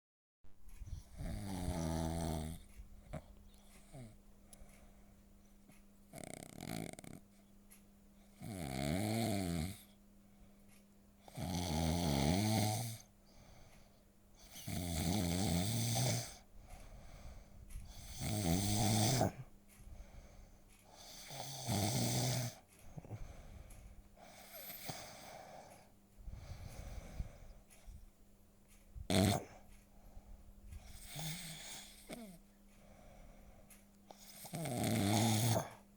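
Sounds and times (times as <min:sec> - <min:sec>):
cat snoring: 0:00.8 - 0:04.2, 0:06.1 - 0:07.2, 0:08.3 - 0:10.0, 0:11.2 - 0:13.1, 0:14.4 - 0:16.4, 0:17.0 - 0:19.5, 0:20.9 - 0:23.6, 0:24.2 - 0:25.8, 0:29.1 - 0:29.6, 0:30.8 - 0:33.4, 0:34.1 - 0:35.8
cat breathing: 0:13.2 - 0:14.6, 0:16.3 - 0:21.3, 0:22.8 - 0:28.2, 0:29.0 - 0:34.3.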